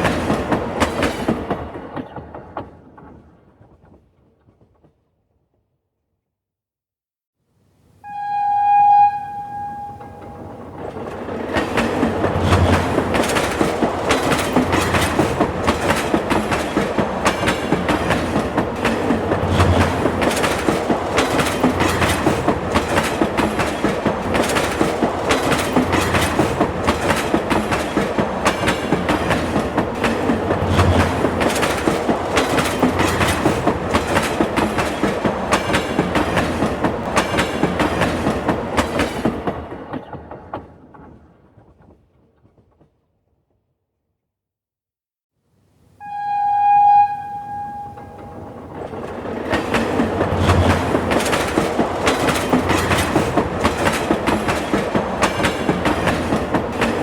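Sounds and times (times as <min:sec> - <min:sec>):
train wheels clickety-clack: 0:00.0 - 0:05.1, 0:10.2 - 0:43.1, 0:48.0 - 0:57.0
subway train horn: 0:08.0 - 0:11.0, 0:46.0 - 0:49.0.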